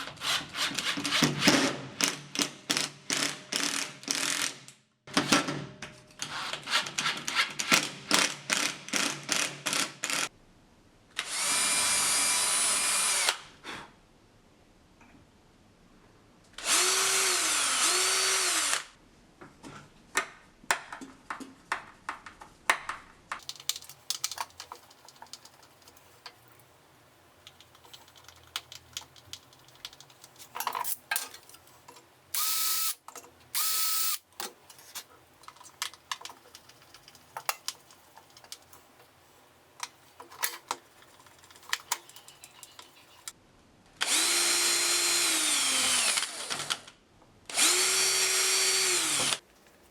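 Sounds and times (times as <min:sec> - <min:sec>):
cordless drill whining: 0:11.2 - 0:13.4, 0:16.6 - 0:18.9, 0:32.4 - 0:33.0, 0:33.6 - 0:34.2, 0:44.0 - 0:46.8, 0:47.5 - 0:49.4
handling clicks and knocks: 0:20.7 - 0:26.7, 0:27.4 - 0:32.1, 0:34.4 - 0:39.2, 0:39.8 - 0:43.3.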